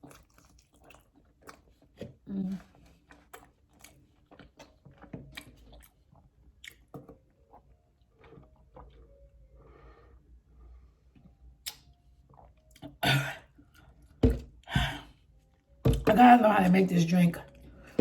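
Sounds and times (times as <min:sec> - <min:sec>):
wet chewing and lip smacks: 0:00.0 - 0:09.2, 0:11.2 - 0:13.0
breathy sound: 0:14.6 - 0:15.2.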